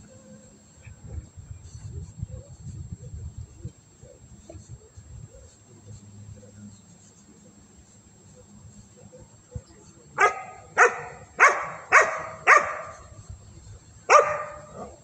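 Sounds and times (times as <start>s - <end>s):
dog barking: 10.2s - 13.1s, 14.1s - 15.0s.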